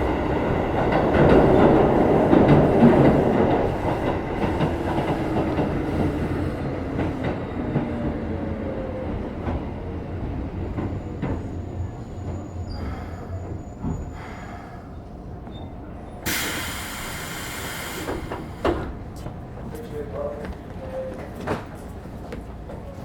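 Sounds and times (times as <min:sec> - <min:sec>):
train wheel and motor rumble: 0:00.0 - 0:23.0
compressed air hiss: 0:16.3 - 0:18.8.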